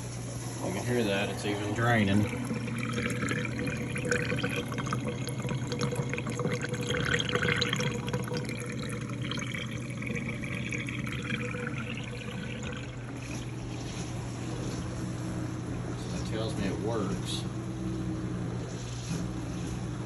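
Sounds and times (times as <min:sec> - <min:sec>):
dishwasher pump hum: 0:00.0 - 0:20.0
water splashing and gurgling: 0:01.9 - 0:14.7.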